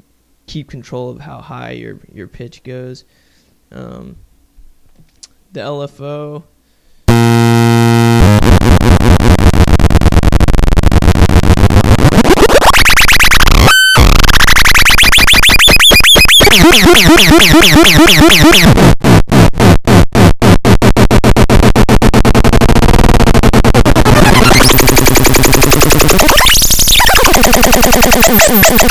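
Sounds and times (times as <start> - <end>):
harsh buzzing synth tones: 7.1 - 28.9.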